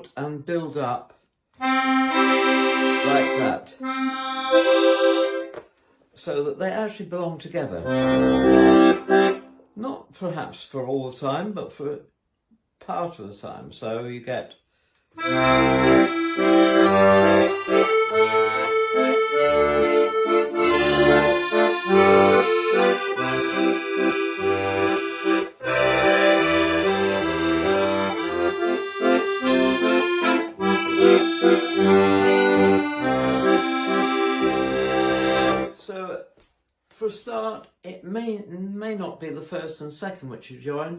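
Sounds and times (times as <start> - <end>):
accordion playing: 1.6 - 5.7, 7.8 - 9.7, 15.2 - 35.8.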